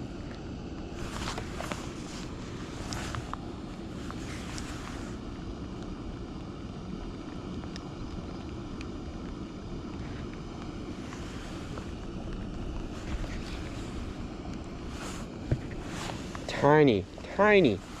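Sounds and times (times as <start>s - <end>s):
wind buffeting microphone: 10.8s - 18.0s.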